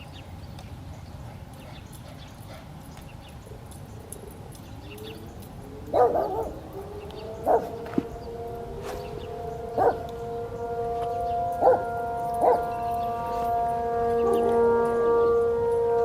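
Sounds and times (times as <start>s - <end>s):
distant warning sirens winding up: 1.5s - 16.0s
low rumble: 5.2s - 13.5s
dog barking: 5.9s - 6.6s, 7.4s - 7.8s, 9.8s - 10.1s, 11.6s - 12.8s.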